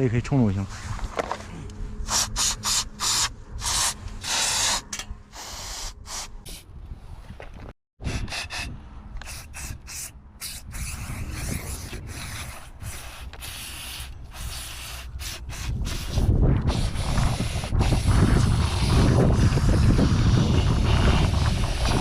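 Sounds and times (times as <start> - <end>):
spray cleaner hissing: 12.3 - 16.1.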